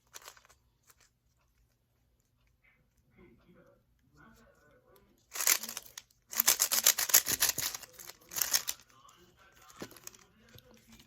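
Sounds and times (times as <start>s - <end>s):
speed cube clicking: 5.3s - 8.8s.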